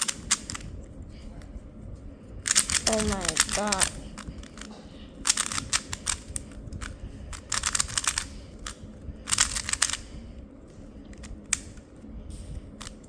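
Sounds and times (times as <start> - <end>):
plastic puzzle cube clicking: 0.0 - 0.6, 2.5 - 10.1, 11.2 - 11.8, 12.8 - 13.0.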